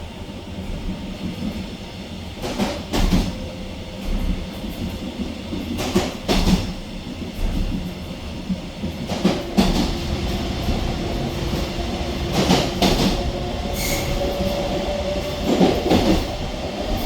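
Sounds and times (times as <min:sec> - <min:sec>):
train rolling rumble: 0:00.0 - 0:17.0
train wheels clacking over rail joints: 0:02.4 - 0:03.4, 0:04.0 - 0:16.4.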